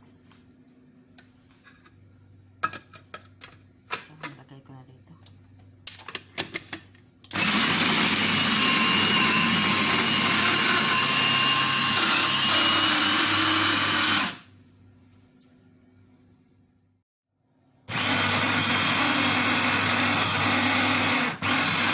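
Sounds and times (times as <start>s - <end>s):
electric blender running: 7.3s - 14.5s, 17.9s - 21.9s.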